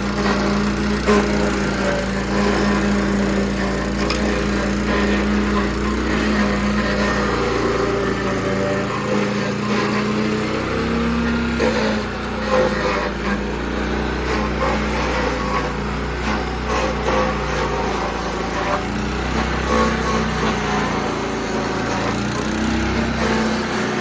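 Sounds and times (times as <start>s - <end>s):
stump grinder running: 0.0s - 24.0s.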